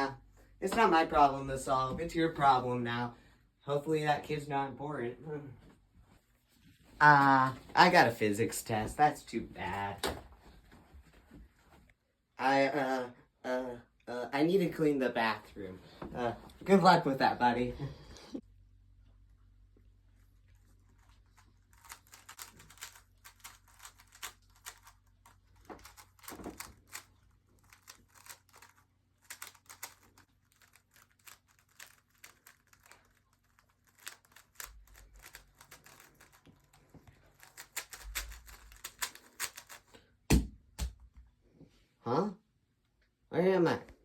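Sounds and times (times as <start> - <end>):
puzzle cube plastic clicks: 20.8 - 40.0.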